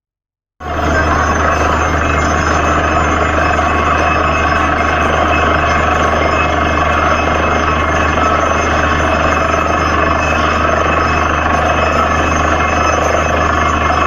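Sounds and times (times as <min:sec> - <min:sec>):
drilling rig mechanical din: 0:00.6 - 0:14.0.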